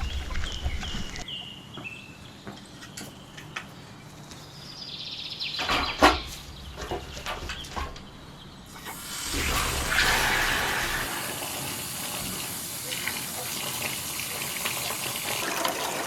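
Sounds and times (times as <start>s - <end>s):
bird calls and chirps: 0.0s - 8.9s.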